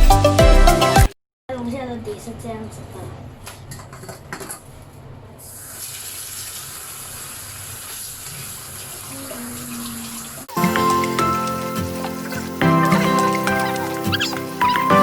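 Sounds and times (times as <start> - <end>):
tap water running into sink: 5.6 - 15.0.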